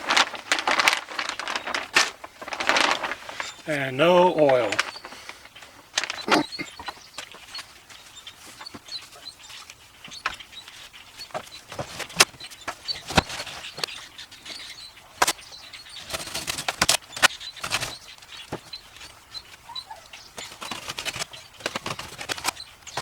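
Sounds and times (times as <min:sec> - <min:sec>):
packaging rustling: 0:00.0 - 0:06.4.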